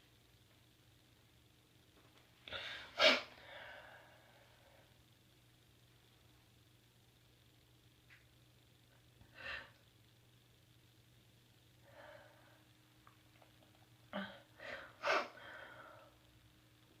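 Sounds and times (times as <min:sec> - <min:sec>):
person sneezing: 0:02.5 - 0:03.4.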